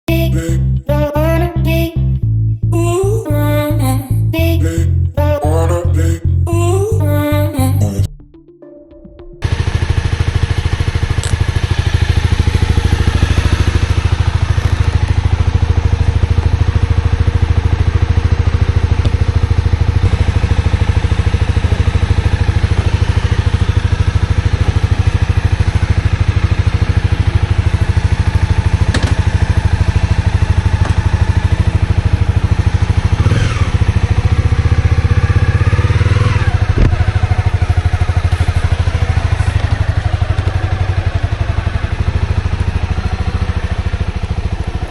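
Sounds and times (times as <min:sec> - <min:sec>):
motorcycle engine running: 0:09.4 - 0:44.9.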